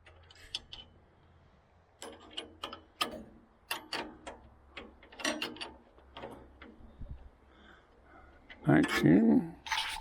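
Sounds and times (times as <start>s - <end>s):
wrench clicking on bolt: 2.0s - 6.8s.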